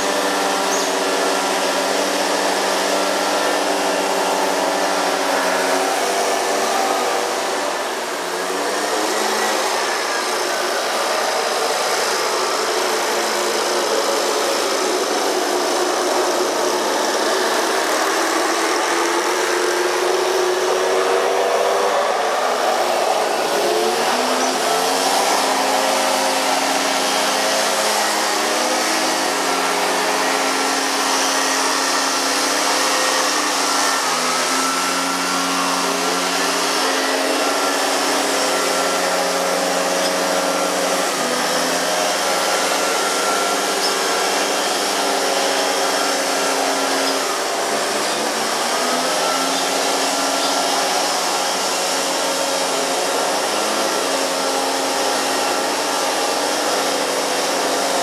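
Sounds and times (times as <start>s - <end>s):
motor humming: 0.0s - 58.0s.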